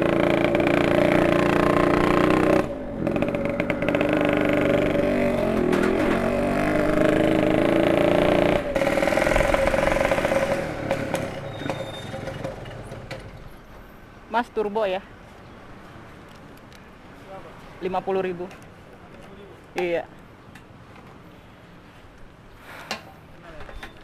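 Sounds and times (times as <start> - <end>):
motorcycle engine running: 0.0 - 13.4.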